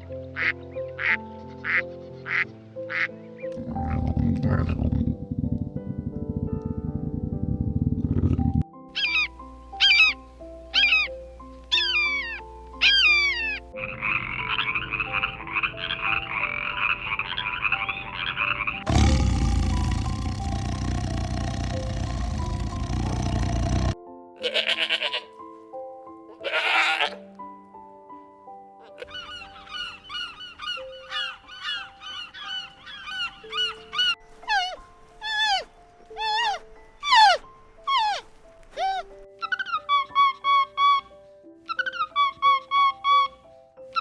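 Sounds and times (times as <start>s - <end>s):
background music with steady notes: 0.0s - 44.0s
rapid raspy chorus of calls: 9.0s - 10.2s, 11.8s - 25.1s, 29.0s - 34.2s.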